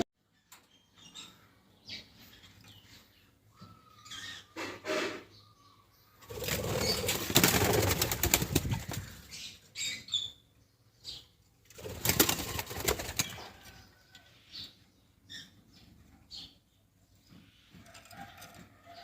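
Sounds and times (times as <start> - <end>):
birds flapping wings: 6.3 - 9.2, 11.7 - 13.6.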